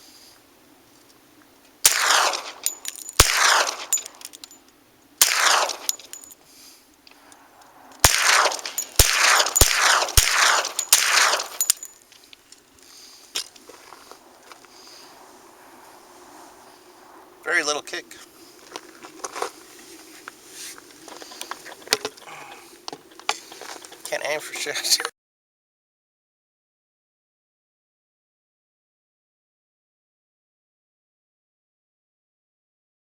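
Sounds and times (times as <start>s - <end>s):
rifle shots with echo: 1.8s - 4.2s, 5.2s - 6.0s, 8.0s - 11.9s.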